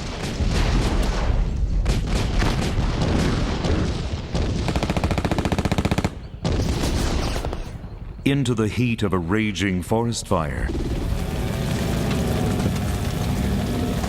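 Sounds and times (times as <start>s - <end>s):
booms: 0.0s - 5.0s
machine-gun fire: 0.0s - 7.8s
gunshots: 0.0s - 8.1s
low rumble: 10.6s - 14.0s.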